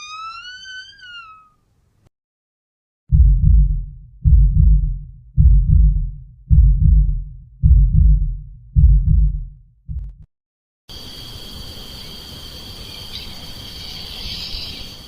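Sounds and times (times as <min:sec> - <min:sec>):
deep heartbeat thumps: 0:03.1 - 0:10.3.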